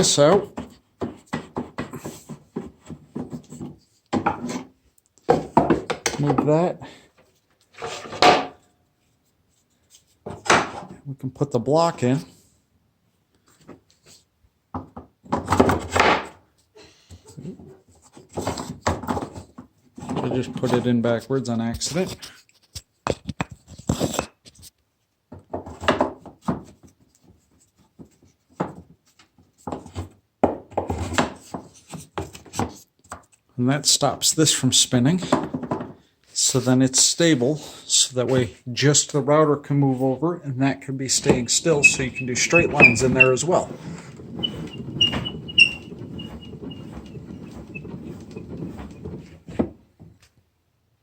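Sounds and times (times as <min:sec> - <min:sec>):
wooden block scraping on wood: 0:00.0 - 0:05.4, 0:07.7 - 0:08.2, 0:41.0 - 0:49.8
faint squeaks: 0:41.1 - 0:49.4
hand-cranked gears rattling: 0:41.3 - 0:49.4.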